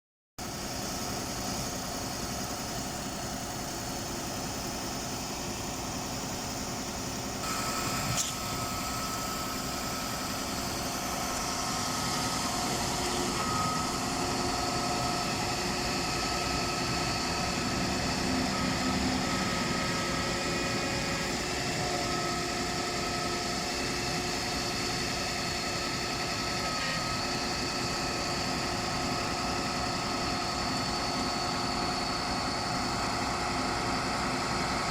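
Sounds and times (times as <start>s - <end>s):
sharp click: 8.1s - 8.4s.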